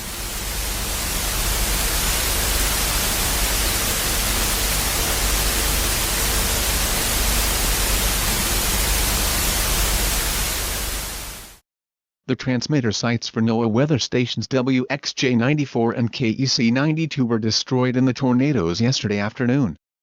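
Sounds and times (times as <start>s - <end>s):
radio static hiss: 0.0s - 11.6s.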